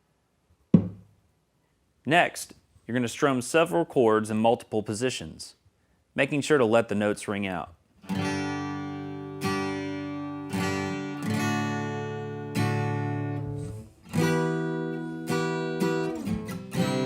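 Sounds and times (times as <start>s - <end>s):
acoustic guitar strumming chords: 8.0s - 17.0s.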